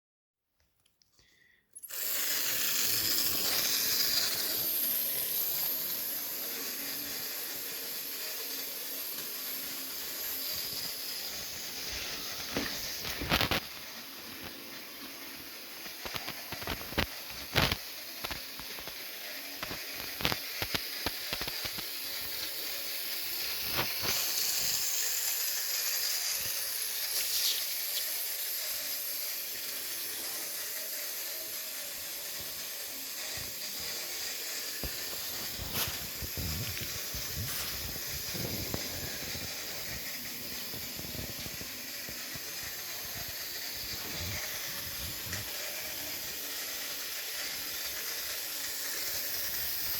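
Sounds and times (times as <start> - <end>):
model train hiss on track: 1.2 - 49.9
sharp clicks and clacks: 15.8 - 49.9.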